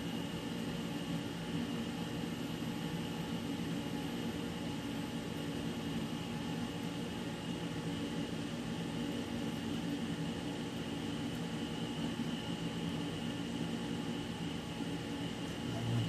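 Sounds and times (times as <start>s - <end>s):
machinery hum with low drone: 0.0s - 16.0s
thin high whine: 15.5s - 16.0s.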